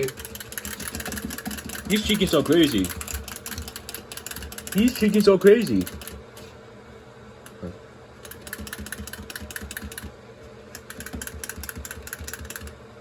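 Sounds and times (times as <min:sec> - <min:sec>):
clockwork spring mechanism whirring: 0:00.0 - 0:06.5.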